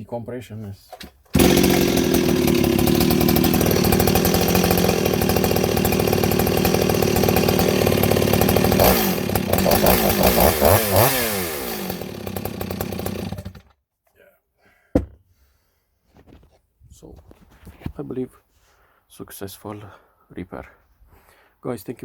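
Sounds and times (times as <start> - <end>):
chainsaw running and revving: 1.3 - 13.7.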